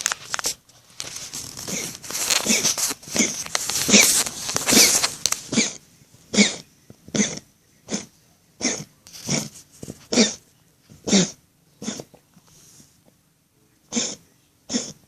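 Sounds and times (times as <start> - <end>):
cat coughing: 5.5 - 9.5, 10.1 - 10.4, 11.0 - 12.1, 13.9 - 15.0.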